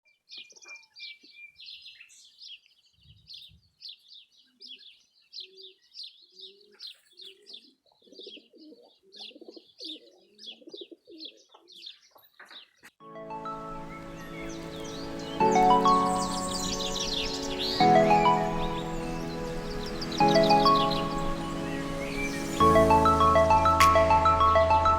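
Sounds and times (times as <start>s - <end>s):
small birds chirping: 0.0s - 24.9s
dove cooing: 6.4s - 11.8s.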